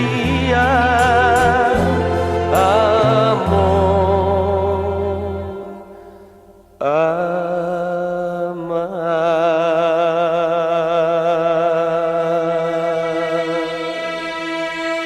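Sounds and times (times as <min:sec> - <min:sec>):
ballad accompaniment: 0:00.0 - 0:06.8
person singing with vibrato: 0:00.0 - 0:15.0.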